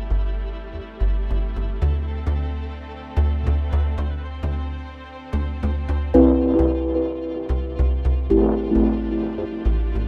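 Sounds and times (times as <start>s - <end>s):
pulsing bass beat: 6.1s - 10.0s
held high chord: 6.2s - 10.0s.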